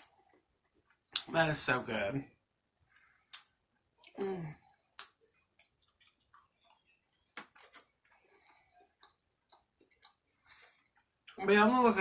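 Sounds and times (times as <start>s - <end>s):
person humming: 4.2s - 4.6s
chewing mouth sounds: 4.9s - 11.4s.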